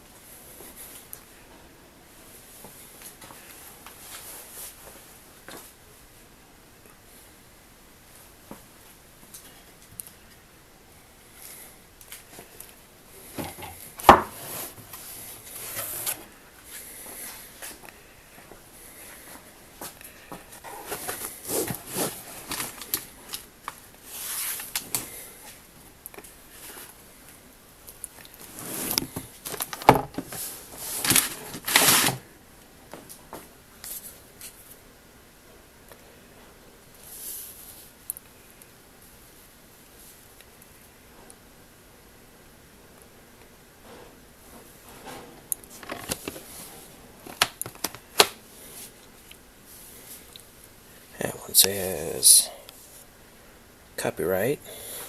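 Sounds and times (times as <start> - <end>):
handling rustling and scraping: 12.1 - 25.6, 28.2 - 32.2, 43.8 - 50.4
rubbing and scraping on wood: 13.3 - 17.8, 20.6 - 23.1, 28.4 - 29.6.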